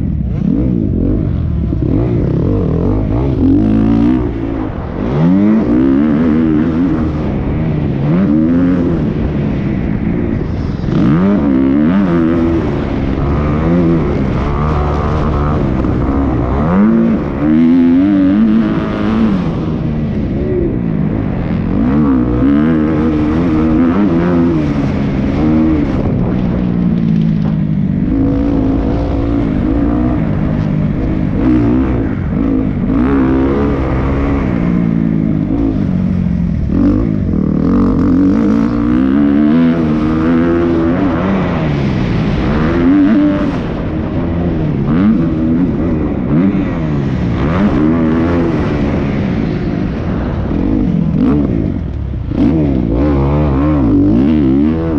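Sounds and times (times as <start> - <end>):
dirt bike engine revving: 0.0 - 54.9.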